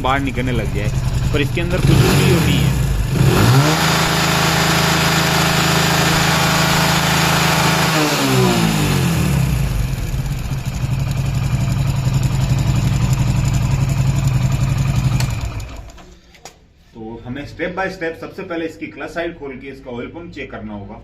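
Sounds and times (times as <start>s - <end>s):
motorcycle engine revving and idling: 0.0s - 16.0s.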